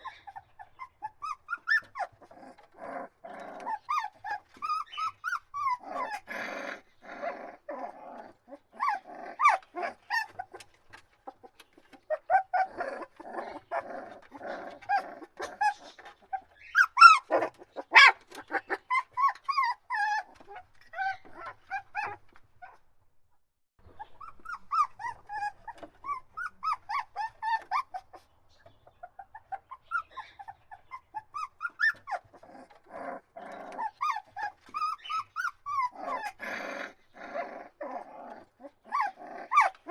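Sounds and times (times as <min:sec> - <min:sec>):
puppies grumbling: 0:00.0 - 0:22.8, 0:23.8 - 0:28.3, 0:29.0 - 0:39.9
puppy yelp: 0:00.0 - 0:22.8, 0:23.9 - 0:28.3, 0:29.0 - 0:39.9
puppies whining and crying: 0:00.0 - 0:22.9, 0:23.8 - 0:28.3, 0:28.9 - 0:39.9.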